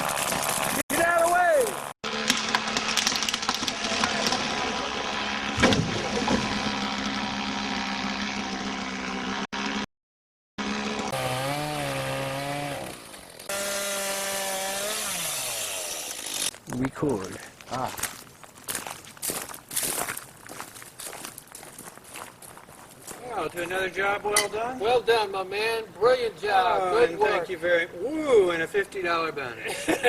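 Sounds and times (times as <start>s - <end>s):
chainsaw engine running: 0.0s - 9.9s, 10.6s - 16.5s.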